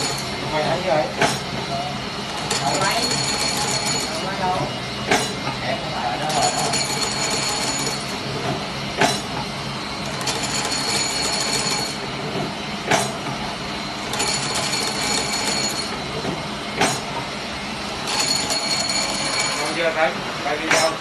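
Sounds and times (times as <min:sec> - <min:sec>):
machine clacking: 0:00.0 - 0:00.3, 0:02.4 - 0:04.2, 0:06.3 - 0:09.3, 0:10.0 - 0:12.0, 0:14.1 - 0:17.1, 0:18.1 - 0:19.8
mechanical running noise: 0:00.0 - 0:20.6
high machine whine: 0:00.0 - 0:21.0.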